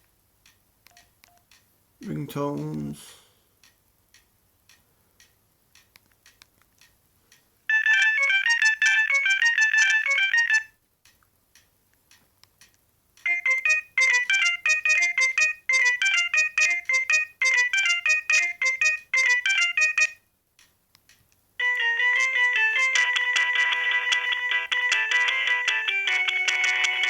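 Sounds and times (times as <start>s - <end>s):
faint clicks: 0.0s - 1.7s, 3.6s - 7.5s, 11.0s - 13.3s, 20.6s - 21.4s
phone ringtones from small speaker: 7.7s - 10.7s.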